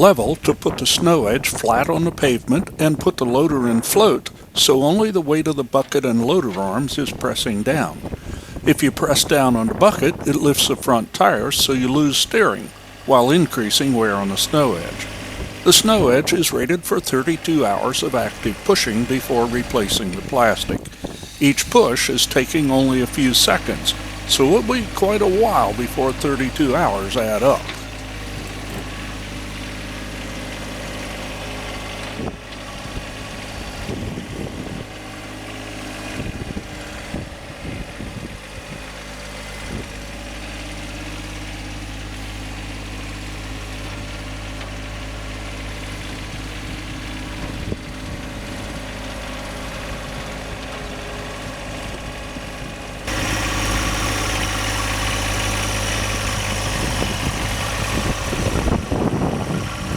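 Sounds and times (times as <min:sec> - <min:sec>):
tractor diesel engine running: 0:00.0 - 0:59.9.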